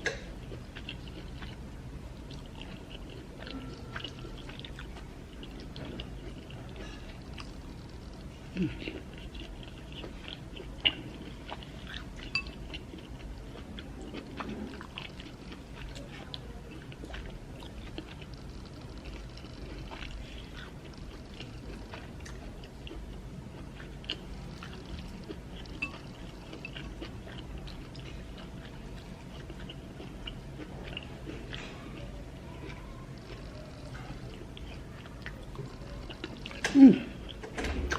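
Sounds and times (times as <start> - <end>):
person chewing food: 0.0 - 37.5.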